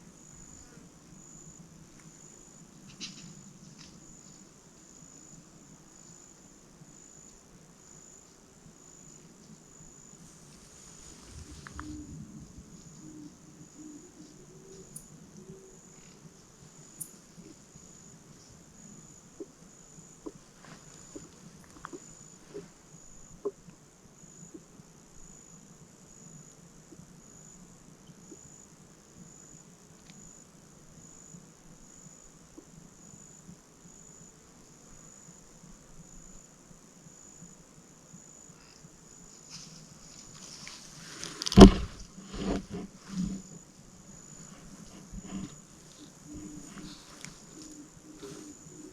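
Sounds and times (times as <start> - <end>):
insect chirping: 0.0 - 48.9
brief rustle: 39.5 - 43.6, 44.4 - 48.6.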